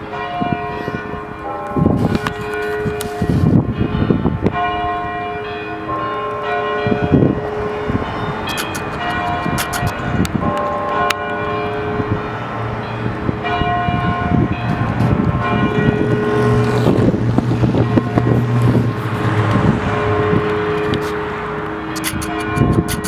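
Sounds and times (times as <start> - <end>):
church bells ringing: 0.0 - 18.8, 19.4 - 22.0
passing vehicle hum: 11.9 - 23.0.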